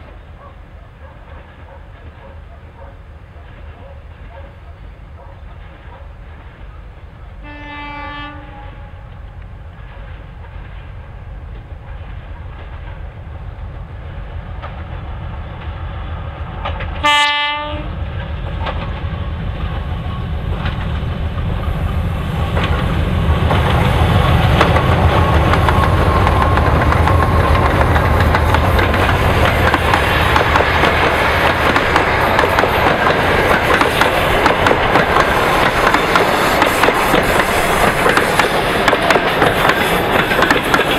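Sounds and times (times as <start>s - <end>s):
train wheels on rail: 0.0s - 40.9s
locomotive horn: 7.4s - 9.1s, 17.0s - 18.0s.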